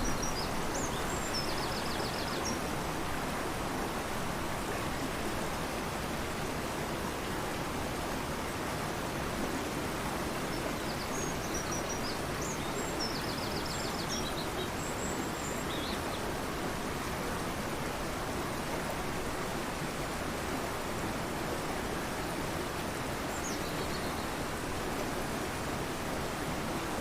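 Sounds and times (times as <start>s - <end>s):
small birds singing: 0.0s - 2.7s, 10.5s - 16.3s, 23.3s - 24.6s
river rushing: 0.0s - 27.0s.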